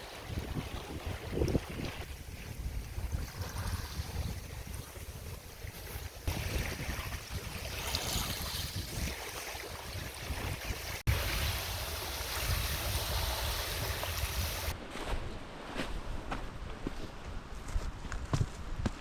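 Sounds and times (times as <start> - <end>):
steady rushing like water: 0.0 - 14.8
wind buffeting microphone: 0.0 - 14.8.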